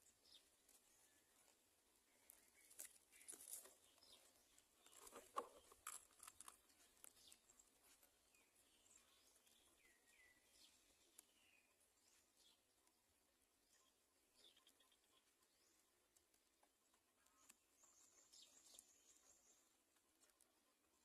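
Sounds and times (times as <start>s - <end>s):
rustling: 0.6s - 9.5s.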